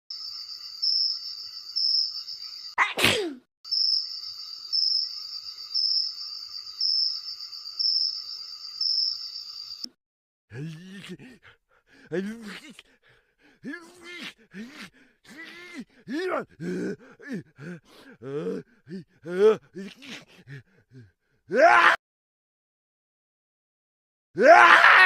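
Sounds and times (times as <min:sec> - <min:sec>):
person sneezing: 0:02.8 - 0:03.5
person groaning: 0:10.5 - 0:21.8.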